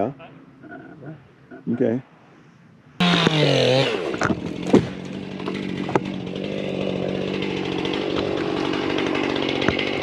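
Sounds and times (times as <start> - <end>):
chainsaw engine idling: 3.0 - 10.0
sharp knocks: 7.9 - 10.0.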